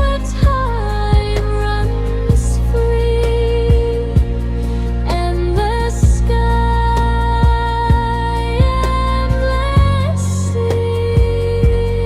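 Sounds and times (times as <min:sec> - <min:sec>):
slow ambient song: 0:00.0 - 0:12.0
soft low beat: 0:00.0 - 0:12.0
steady bass: 0:00.0 - 0:12.0.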